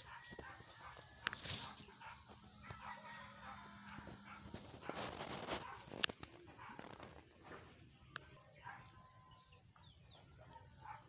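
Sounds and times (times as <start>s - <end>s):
rustling: 0.0s - 3.0s, 3.7s - 7.7s
faint pet animal sounds: 0.0s - 11.0s.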